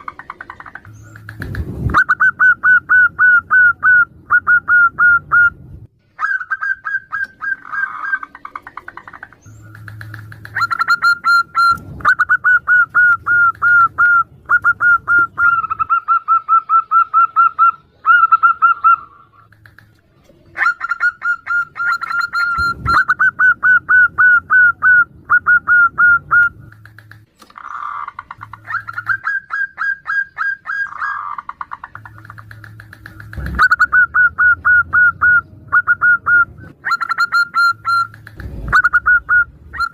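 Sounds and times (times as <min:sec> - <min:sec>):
dove cooing: 0:00.0 - 0:05.6, 0:06.2 - 0:25.0, 0:25.6 - 0:39.9
doves calling rapid notes: 0:00.0 - 0:39.9
sharp clicks: 0:00.3 - 0:01.7, 0:08.5 - 0:11.9, 0:19.5 - 0:20.1, 0:26.4 - 0:29.2, 0:31.5 - 0:33.9, 0:37.6 - 0:38.8.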